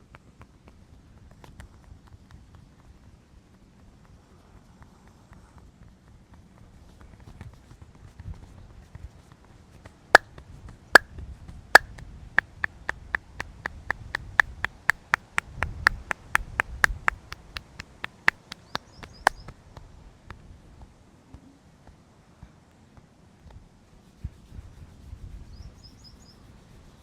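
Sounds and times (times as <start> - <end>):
sharp hand claps: 11.8 - 19.4.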